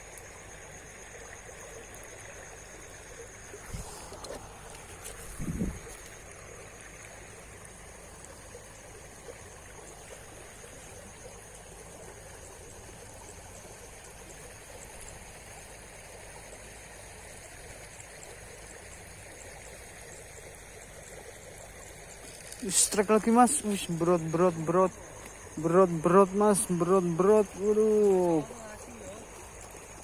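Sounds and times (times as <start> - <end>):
river water rushing: 21.8 - 30.0.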